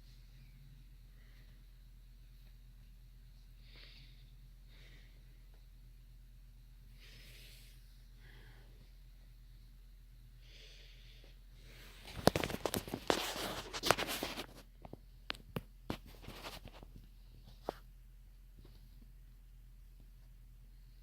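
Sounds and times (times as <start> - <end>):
ceiling fan humming: 0.0 - 21.0.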